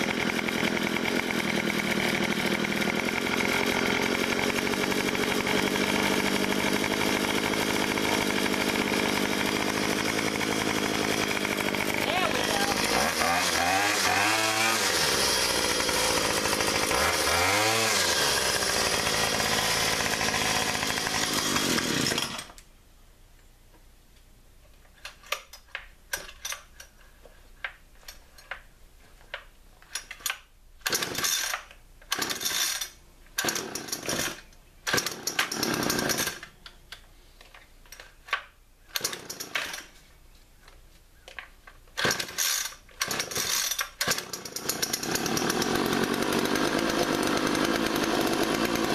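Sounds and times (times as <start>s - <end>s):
two-stroke engine revving: 0.0s - 22.5s, 35.0s - 36.4s, 42.1s - 48.9s.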